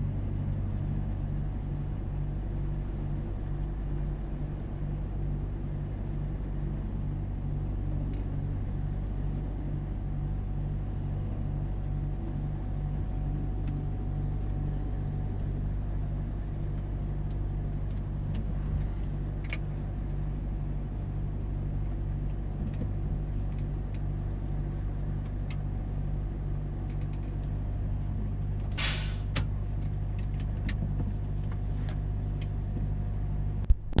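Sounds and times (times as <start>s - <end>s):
truck diesel engine running: 0.0s - 33.6s
short sharp noise: 28.7s - 29.3s.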